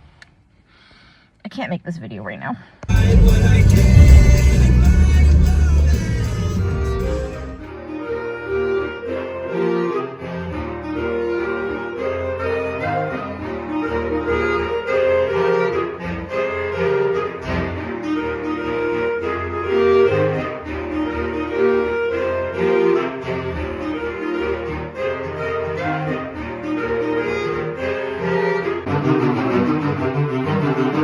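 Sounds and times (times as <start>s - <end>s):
melodic instrumental music: 2.9s - 7.7s.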